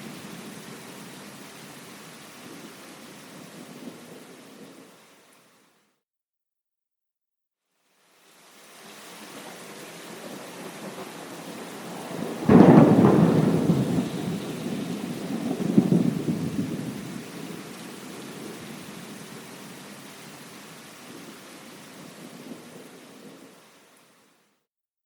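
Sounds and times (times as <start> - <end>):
steady rain: 0.0 - 5.9, 7.7 - 24.6
rolling thunder: 10.1 - 19.3.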